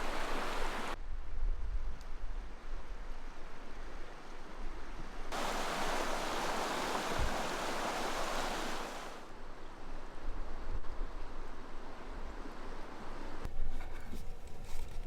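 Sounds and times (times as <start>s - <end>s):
rushing stream water: 0.0s - 1.0s, 5.3s - 9.3s.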